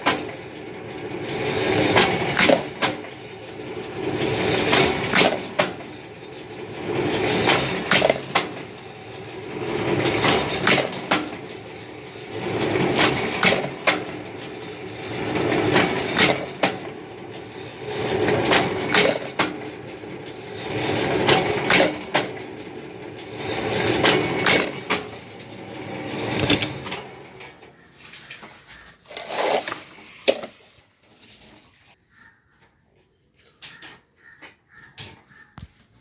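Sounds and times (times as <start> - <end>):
sharp metallic clanks: 0.0 - 27.7
workshop machinery running: 0.0 - 31.9.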